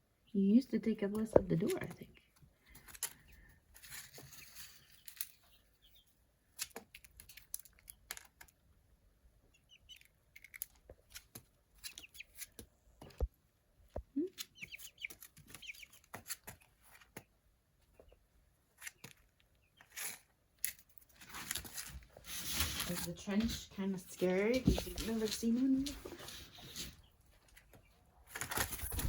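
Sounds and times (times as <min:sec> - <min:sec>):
chick peeping: 0:09.4 - 0:10.5, 0:11.8 - 0:13.3, 0:14.0 - 0:16.6
light taps and scratches: 0:21.4 - 0:27.0.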